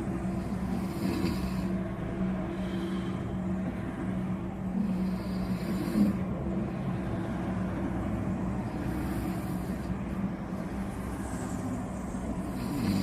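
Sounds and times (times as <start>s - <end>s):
steady low hum: 0.0s - 13.0s
man snoring: 0.4s - 1.8s, 4.8s - 6.2s, 8.7s - 9.9s, 12.4s - 13.0s.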